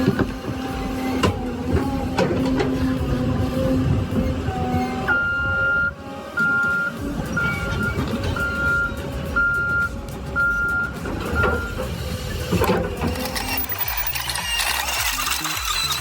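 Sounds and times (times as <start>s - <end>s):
machine engine running: 0.0s - 16.0s
reversing alarm beeping: 4.5s - 11.9s.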